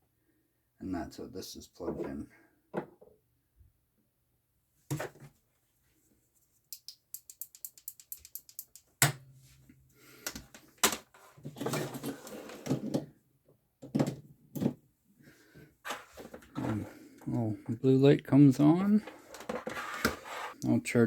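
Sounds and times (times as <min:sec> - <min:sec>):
rapid ticks: 0:06.8 - 0:08.9.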